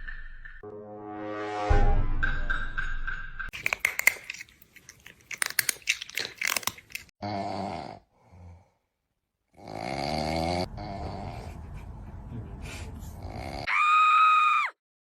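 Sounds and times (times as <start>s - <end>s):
growl-like vocal sounds: 7.2s - 8.8s, 9.5s - 11.5s, 13.2s - 13.7s.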